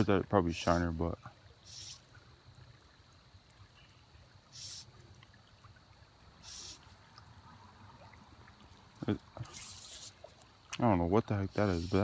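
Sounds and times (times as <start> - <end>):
creek water trickling: 0.0 - 12.0
short soft hisses: 1.6 - 2.2, 4.5 - 5.0, 6.4 - 7.0, 9.4 - 10.3.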